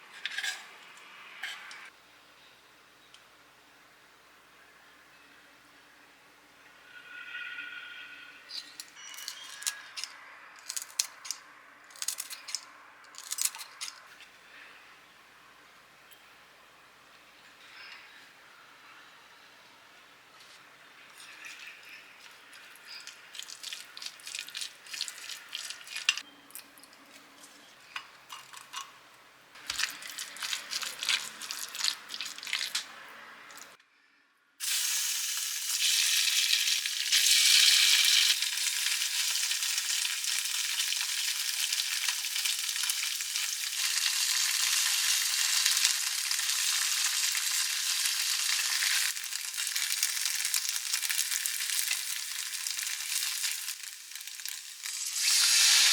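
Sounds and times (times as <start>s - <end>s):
food sizzling in frying pan: 34.6s - 55.9s.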